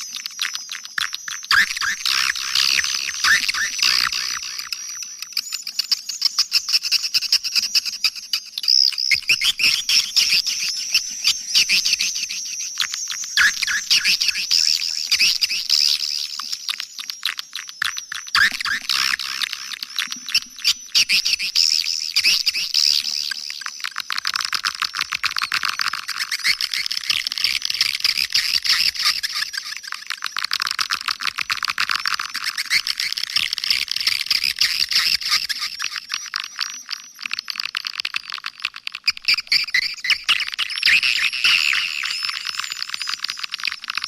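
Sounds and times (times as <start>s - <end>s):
swiftlets twittering: 39.3s - 44.0s.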